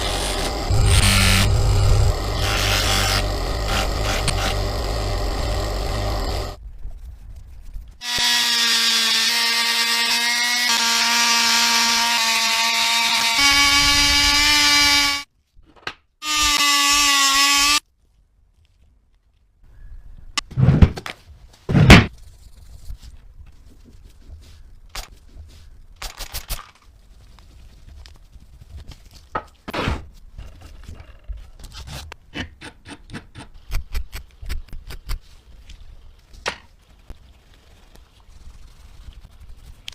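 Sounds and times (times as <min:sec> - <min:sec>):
power tool whining: 0:00.0 - 0:06.6.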